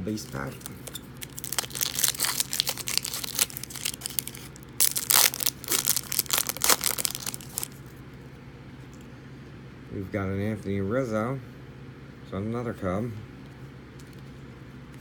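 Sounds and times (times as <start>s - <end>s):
foil wrapper crinkling and tearing: 0.1s - 7.8s.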